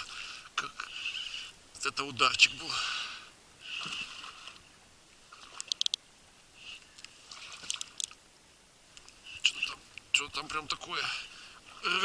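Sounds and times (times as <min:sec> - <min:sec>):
reel clicks: 0:05.5 - 0:06.0, 0:06.9 - 0:08.2.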